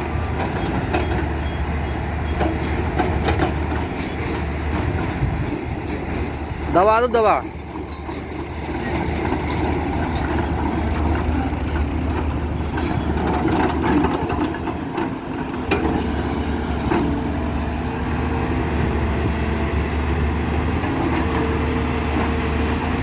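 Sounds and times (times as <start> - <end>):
heavy diesel engine running: 0.0 - 23.0
sharp metallic knocks: 7.8 - 14.6.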